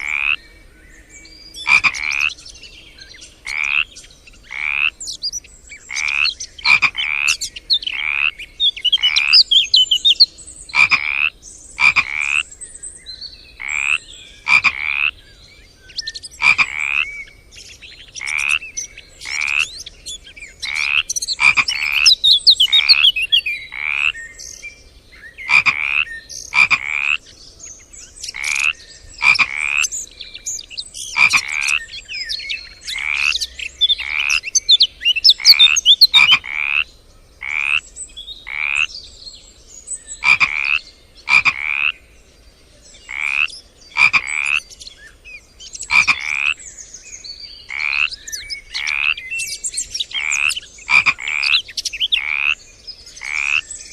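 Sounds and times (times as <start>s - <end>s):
frog trilling calls: 0.0s - 0.4s, 1.6s - 2.4s, 3.4s - 5.3s, 5.9s - 12.5s, 13.6s - 15.2s, 16.1s - 17.3s, 18.0s - 24.2s, 25.4s - 27.3s, 28.3s - 30.1s, 31.0s - 37.8s, 38.4s - 39.0s, 40.2s - 42.0s, 43.1s - 44.8s, 45.8s - 46.6s, 47.7s - 49.4s, 50.0s - 52.6s, 53.2s - 53.7s
frogs calling: 0.0s - 0.6s, 1.4s - 24.7s, 25.3s - 39.0s, 40.1s - 42.1s, 43.0s - 53.9s.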